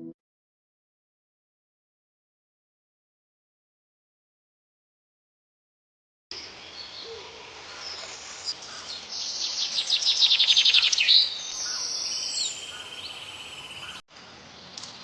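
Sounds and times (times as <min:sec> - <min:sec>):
birds calling: 0:06.4 - 0:15.0.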